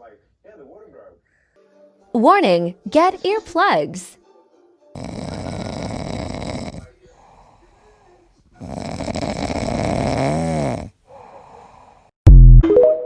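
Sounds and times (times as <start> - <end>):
dog snoring loudly: 5.0 - 7.6, 8.6 - 12.0
dog breathing: 5.0 - 12.2.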